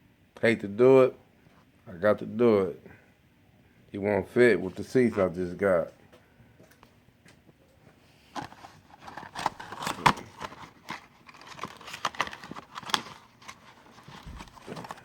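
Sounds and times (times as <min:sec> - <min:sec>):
crinkling rustles: 0:06.6 - 0:15.0.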